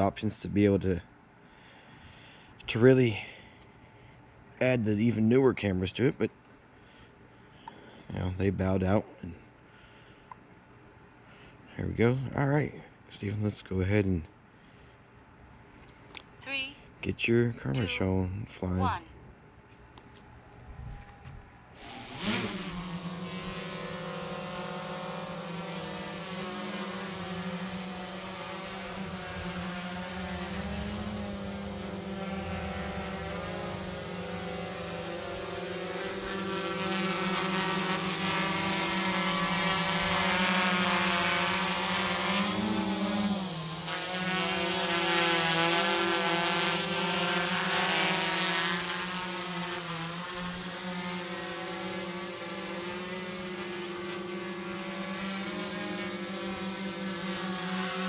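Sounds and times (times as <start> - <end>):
drone propellers humming: 20.4 - 58.0.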